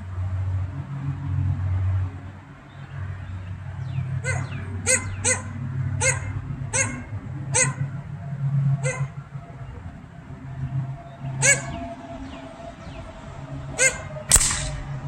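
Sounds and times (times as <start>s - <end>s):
dog barking: 4.2s - 7.9s, 8.8s - 9.2s, 11.4s - 11.8s, 13.8s - 14.1s.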